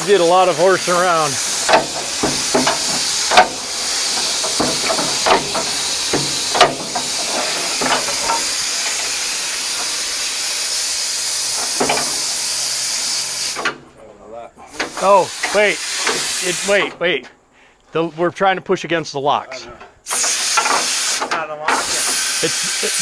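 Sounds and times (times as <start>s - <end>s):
sharp metallic knocks: 0.0s - 10.6s, 11.5s - 13.8s
compressed air hissing: 0.0s - 13.8s, 14.6s - 17.0s, 20.0s - 23.0s.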